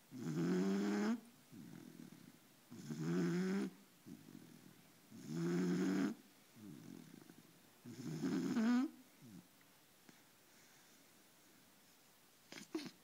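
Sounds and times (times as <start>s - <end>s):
puppy snoring: 0.1s - 9.5s, 12.5s - 13.0s.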